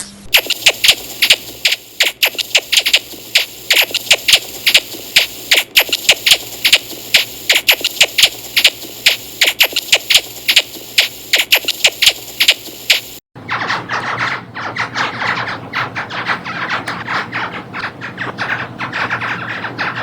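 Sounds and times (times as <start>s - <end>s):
laser gun zaps: 0.0s - 13.2s.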